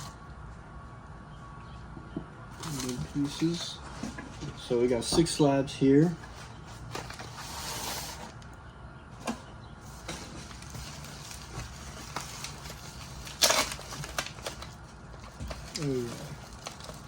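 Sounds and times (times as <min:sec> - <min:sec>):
packaging rustling: 0:02.6 - 0:03.8, 0:09.8 - 0:17.0.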